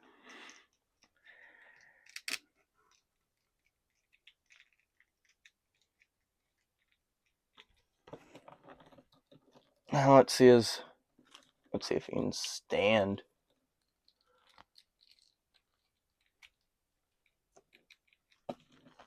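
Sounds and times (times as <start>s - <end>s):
soft plastic rustle: 13.4s - 19.0s.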